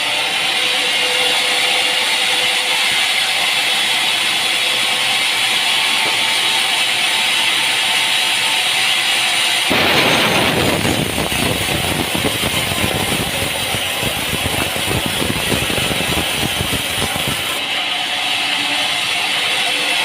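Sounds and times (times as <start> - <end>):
machinery clattering: 9.7 - 17.6.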